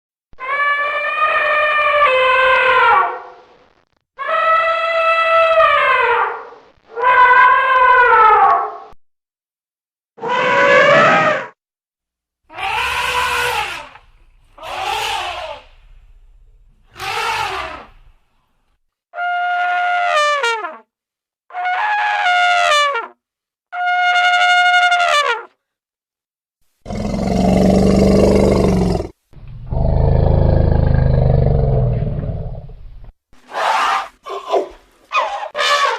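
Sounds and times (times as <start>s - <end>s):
elephant short calls: 12.5s - 15.8s, 16.9s - 18.0s
elephant trumpeting: 12.5s - 16.1s, 16.8s - 18.1s, 33.4s - 35.9s
elephant low rough roars: 12.5s - 18.1s, 26.9s - 32.8s.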